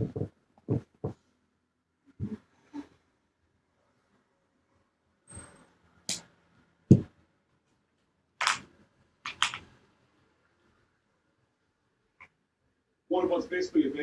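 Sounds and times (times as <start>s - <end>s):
sharp knocks and clicks: 0.0s - 1.2s, 6.9s - 7.2s.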